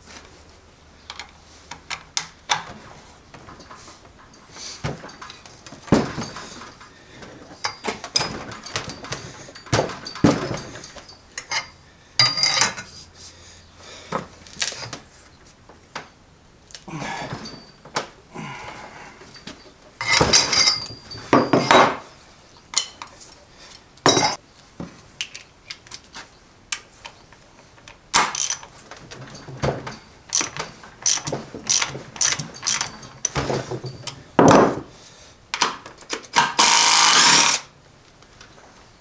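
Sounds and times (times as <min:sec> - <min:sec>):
metal tools clicking and knocking: 0:01.1 - 0:13.0, 0:19.3 - 0:23.1, 0:23.7 - 0:24.4, 0:27.8 - 0:34.9, 0:35.5 - 0:37.7.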